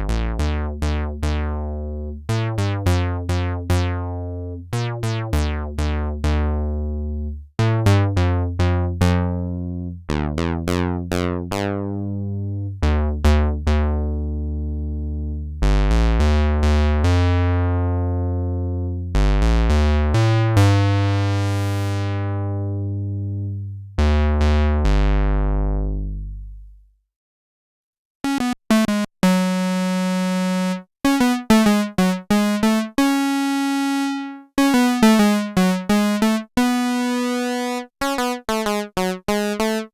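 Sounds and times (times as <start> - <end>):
buzzy synthesizer bass notes: 0.0 - 7.3, 28.3 - 39.9.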